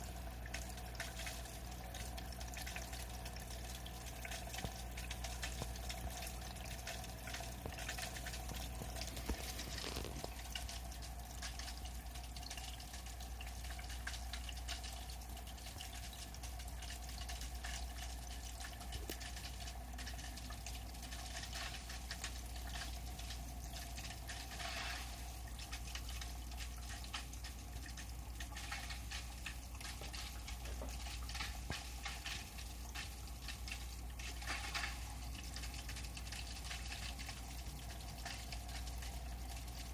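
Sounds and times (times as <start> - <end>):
aquarium filter humming: 0.0 - 39.9
trickling water: 0.0 - 39.9
fine crackling: 8.8 - 10.4.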